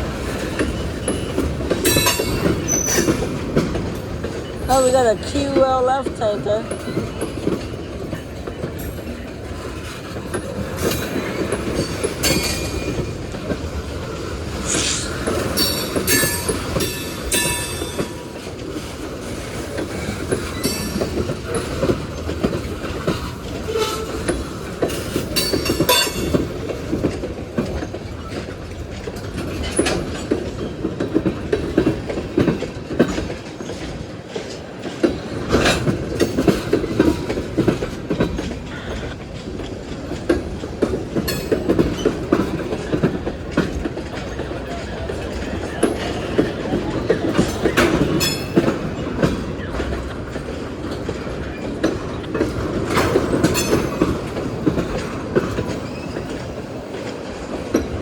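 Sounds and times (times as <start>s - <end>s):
train wheels clacking over rail joints: 0.0s - 58.0s
wheel squeals and clanks: 0.4s - 3.7s, 14.6s - 18.4s, 20.0s - 21.7s, 23.2s - 26.5s, 43.6s - 54.2s, 55.5s - 56.7s.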